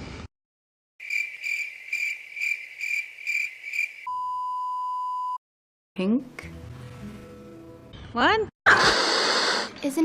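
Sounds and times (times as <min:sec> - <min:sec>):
cricket chirps: 0:01.0 - 0:04.1
censor bleep tone: 0:04.1 - 0:05.4.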